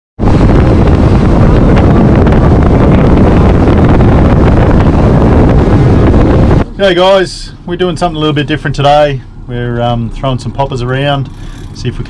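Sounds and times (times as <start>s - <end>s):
boat engine rumble: 0.2s - 12.0s
wind buffeting microphone: 0.2s - 12.0s.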